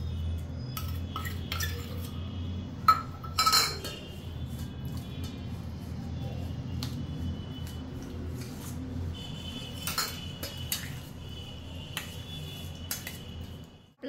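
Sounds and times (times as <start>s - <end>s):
spoon clinking against metal pan: 2.9s - 4.0s, 9.8s - 10.9s.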